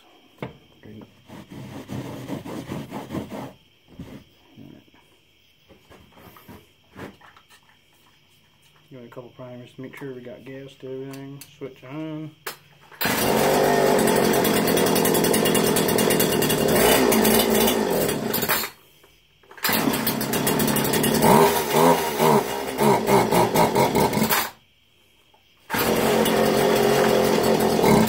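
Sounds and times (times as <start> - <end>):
small two-stroke engine running: 13.0 - 18.7, 19.6 - 24.5, 25.7 - 28.0.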